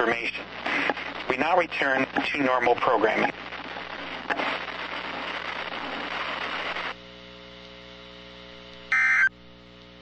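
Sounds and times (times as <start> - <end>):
electrical hum: 0.0 - 10.0
radio static hiss: 0.0 - 10.0
digital data tones burst: 8.9 - 9.3.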